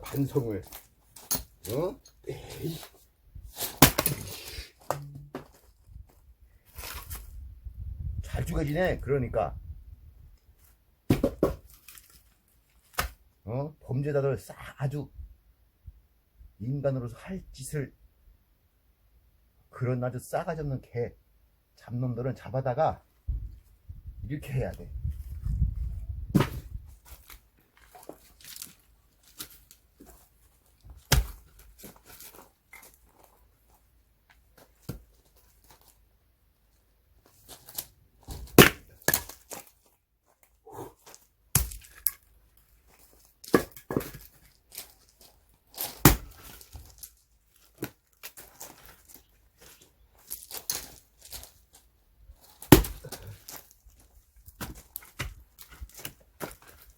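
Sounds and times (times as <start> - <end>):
axe chopping firewood: 3.6 - 5.5, 11.1 - 11.7, 12.9 - 13.2, 26.3 - 26.7, 31.0 - 31.7, 38.3 - 39.6, 41.5 - 42.2, 43.5 - 44.3, 45.9 - 46.6, 52.6 - 53.3
wood cracking apart: 52.6 - 53.7.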